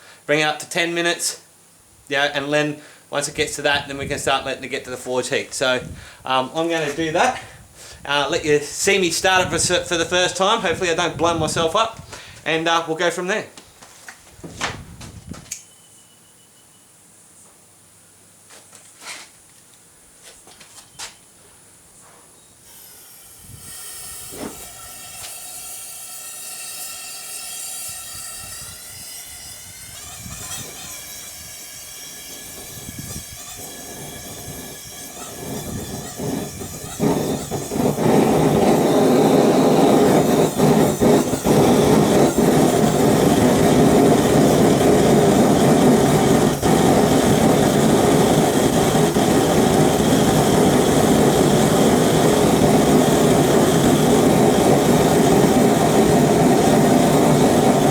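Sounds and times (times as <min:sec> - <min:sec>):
gas hissing through burner: 0:00.0 - 0:13.1, 0:22.6 - 0:57.9
burner roaring: 0:28.0 - 0:57.9.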